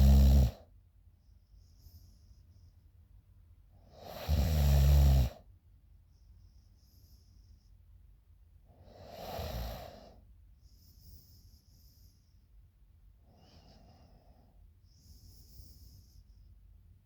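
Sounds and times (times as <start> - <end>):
woman snoring: 0.0 - 0.6, 4.0 - 5.4, 9.0 - 10.0
faint breath hiss: 0.0 - 17.0.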